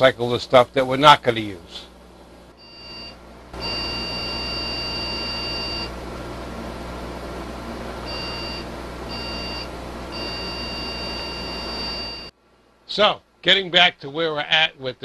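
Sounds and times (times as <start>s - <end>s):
computer fan hum: 0.0s - 15.0s
motherboard speaker beep code: 2.6s - 5.9s, 8.1s - 12.3s.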